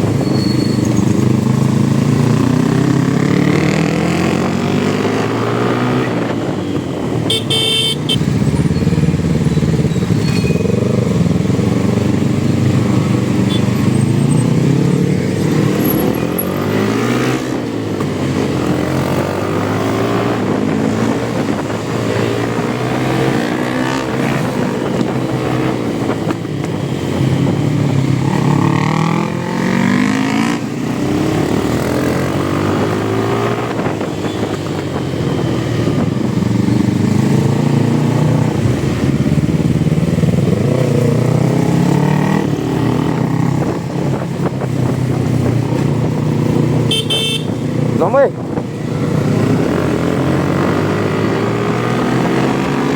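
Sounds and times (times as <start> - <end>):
motorcycle engine revving: 0.0 - 6.6, 7.2 - 52.9
horn toot: 7.3 - 8.2, 46.9 - 47.6.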